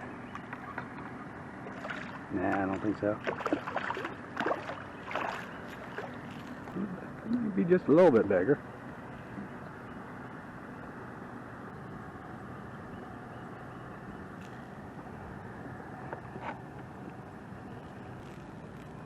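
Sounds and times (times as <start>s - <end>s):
rushing water: 1.7s - 6.2s.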